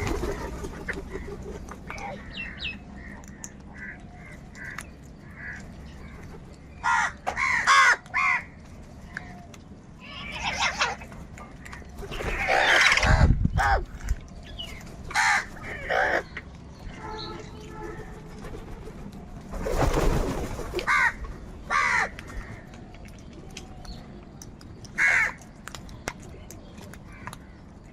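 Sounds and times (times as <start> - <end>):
crows cawing: 2.0 - 5.7, 6.8 - 8.6, 15.1 - 16.3, 20.8 - 22.7, 25.0 - 25.4.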